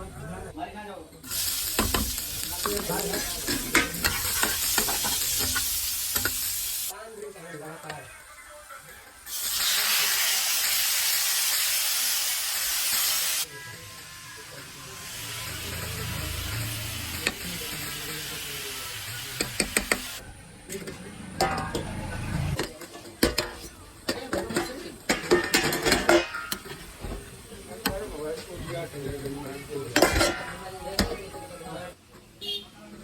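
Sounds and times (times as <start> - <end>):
chicken sizzling in hot oil: 1.2 - 20.2.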